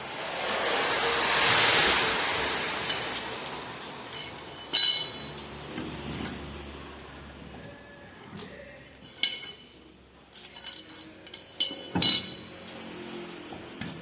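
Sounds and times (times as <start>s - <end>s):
broad rushing noise: 0.0s - 6.9s
metal object clanking: 2.7s - 7.7s, 8.4s - 14.0s.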